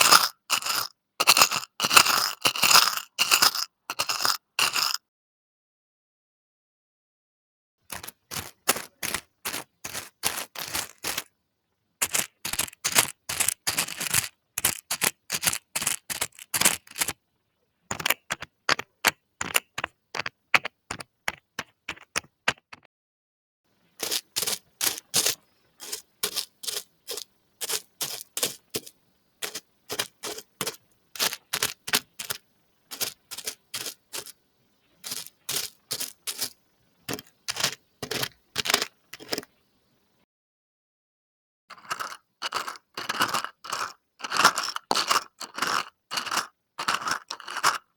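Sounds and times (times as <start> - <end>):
plastic trinkets clicking: 35.0 - 39.5.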